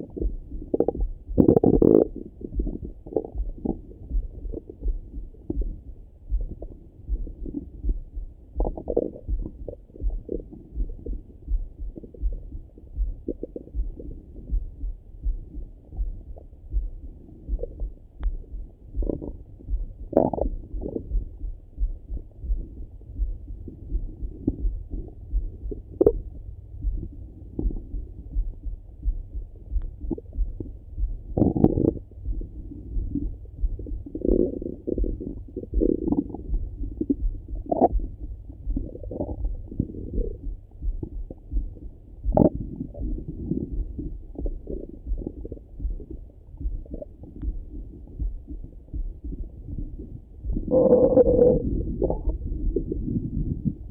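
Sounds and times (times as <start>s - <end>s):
stomach gurgling: 0.0s - 14.8s, 15.5s - 28.5s, 29.6s - 53.9s
steady low pulsing: 0.0s - 53.9s.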